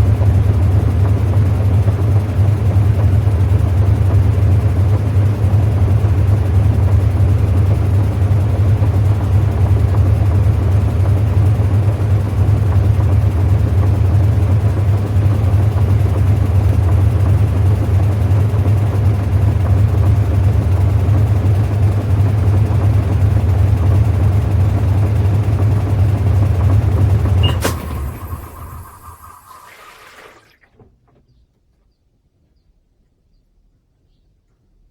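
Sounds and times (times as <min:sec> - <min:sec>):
washing machine spinning: 0:00.0 - 0:30.7
washing machine switch click: 0:27.3 - 0:29.0.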